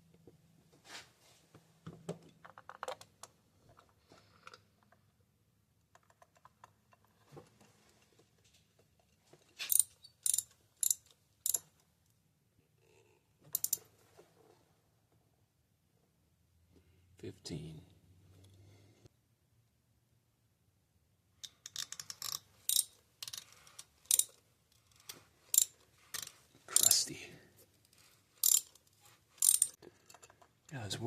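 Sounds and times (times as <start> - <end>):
ratchet wrench clicking: 9.7 - 11.7, 13.5 - 13.8, 21.4 - 27.0, 28.4 - 28.8, 29.4 - 29.8.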